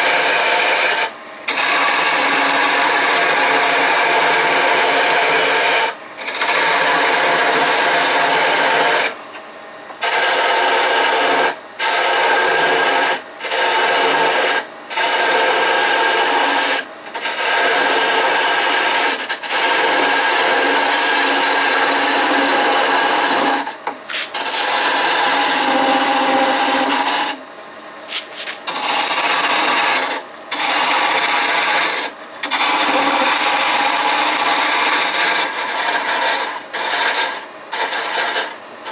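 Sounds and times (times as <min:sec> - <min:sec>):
lathe tool shaving wood: 0:00.0 - 0:09.2, 0:10.0 - 0:27.4, 0:28.1 - 0:38.9
lathe motor hum: 0:10.0 - 0:27.4, 0:28.1 - 0:38.9.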